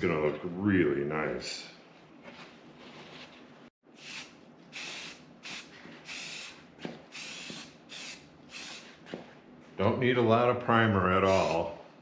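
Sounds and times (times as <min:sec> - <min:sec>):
spray can hissing: 0:04.0 - 0:09.0, 0:11.3 - 0:11.7.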